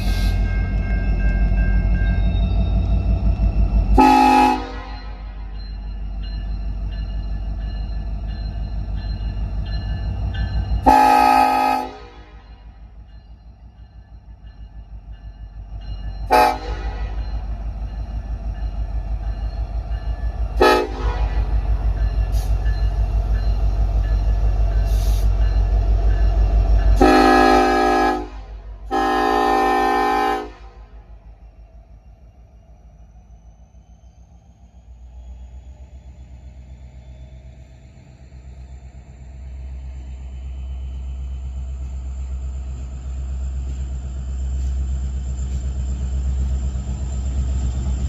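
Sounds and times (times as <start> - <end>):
locomotive engine rumbling: 0.0 - 48.0
locomotive air horn blasts: 4.0 - 5.3, 10.8 - 12.6, 16.3 - 17.2, 20.6 - 21.6, 27.0 - 31.0.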